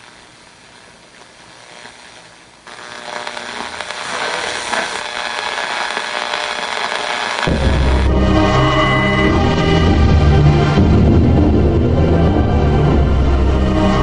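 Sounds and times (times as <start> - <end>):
hissing crackling noise: 0.0 - 10.9.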